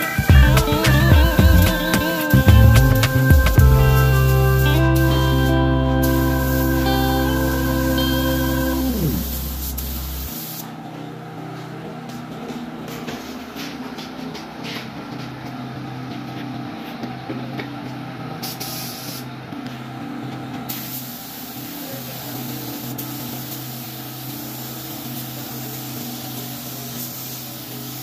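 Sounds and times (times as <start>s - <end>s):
spray gun hissing: 0.0s - 10.6s, 18.5s - 19.2s, 20.7s - 28.0s
low mechanical hum: 0.0s - 18.6s.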